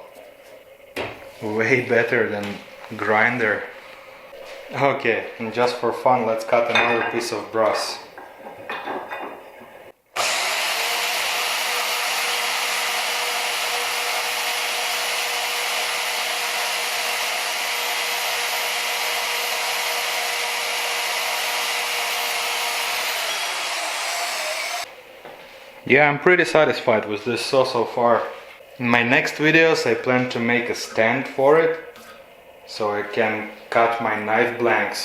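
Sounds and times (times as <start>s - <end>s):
bandsaw motor whine: 10.2s - 24.9s.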